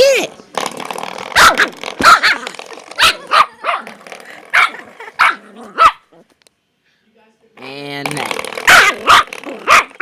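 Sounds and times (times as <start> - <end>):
dog barking in play: 1.3 - 3.9, 4.5 - 6.2, 8.6 - 10.0.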